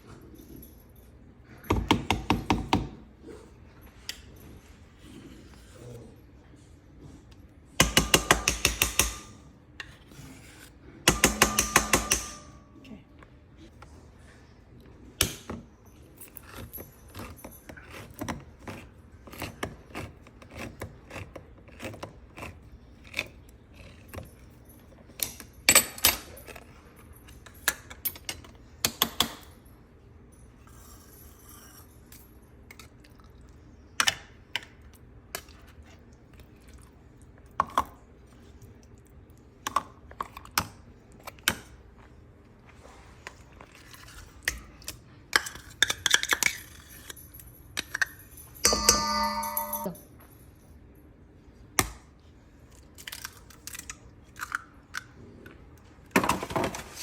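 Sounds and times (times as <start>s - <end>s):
utensils clinking against dishes: 11.1s - 13.0s, 30.5s - 33.0s, 43.7s - 50.5s.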